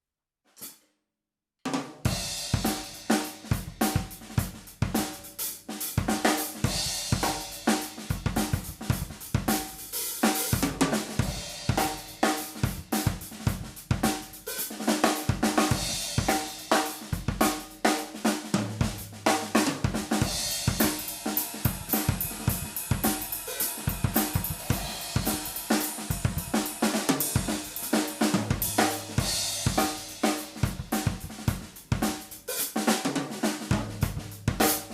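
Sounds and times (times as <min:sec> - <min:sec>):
drum kit groove: 0:01.7 - 0:34.9.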